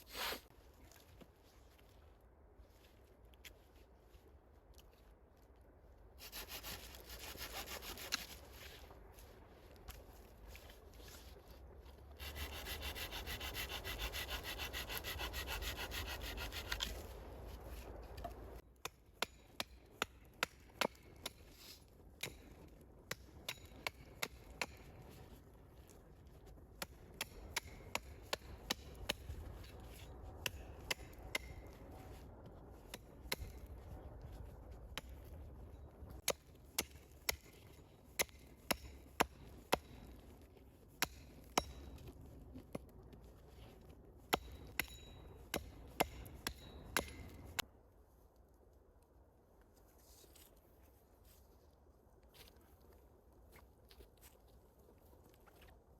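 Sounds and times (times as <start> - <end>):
fast rasping of hand tool: 12.2 - 16.9.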